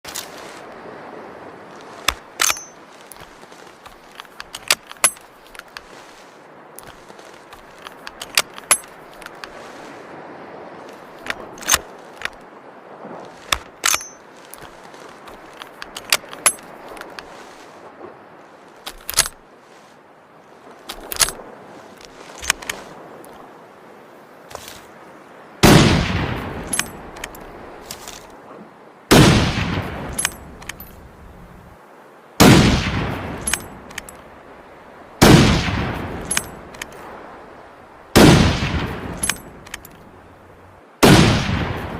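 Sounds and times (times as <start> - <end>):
rifle shots with echo: 25.6 - 26.9, 29.1 - 30.3, 32.4 - 33.7, 35.2 - 36.5, 38.2 - 39.4, 41.0 - 41.9.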